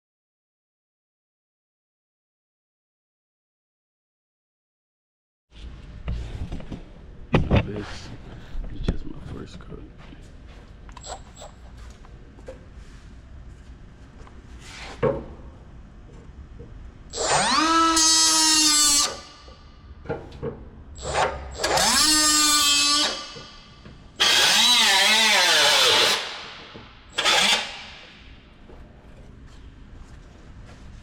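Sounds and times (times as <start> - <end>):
power tool cutting sheet metal: 17.1 - 19.5, 21.0 - 28.3.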